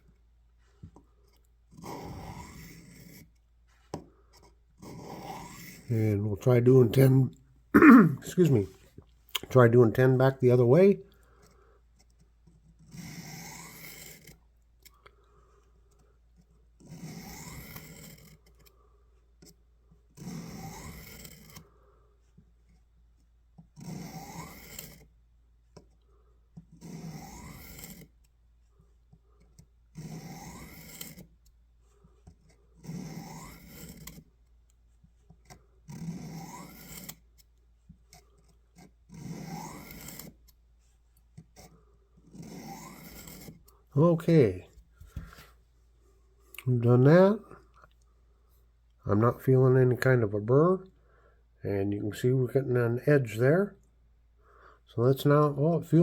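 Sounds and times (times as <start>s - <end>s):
knife scraping on honing rod: 1.2s - 7.2s, 11.3s - 15.0s, 15.9s - 18.8s, 19.4s - 21.8s, 22.6s - 25.2s, 26.6s - 28.4s, 29.1s - 44.2s.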